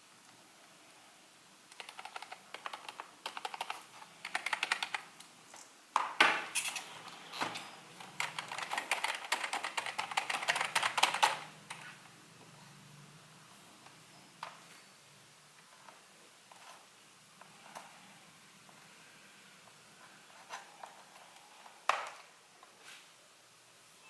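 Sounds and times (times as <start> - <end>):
typing on membrane keyboard: 1.7 - 5.1, 8.0 - 12.0.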